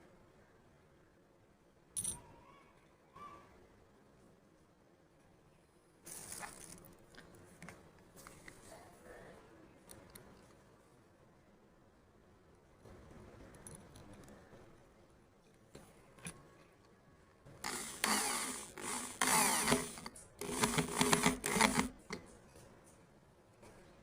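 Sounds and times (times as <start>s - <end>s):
small power tool working wood: 17.6s - 22.0s.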